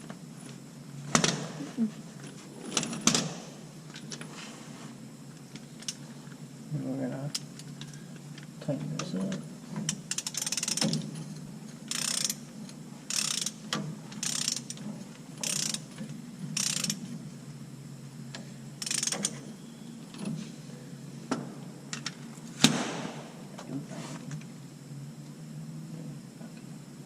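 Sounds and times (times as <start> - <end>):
ratchet wrench clicking: 9.9 - 11.0, 11.9 - 12.4, 13.1 - 14.8, 15.4 - 15.9, 16.6 - 17.0, 18.8 - 19.4.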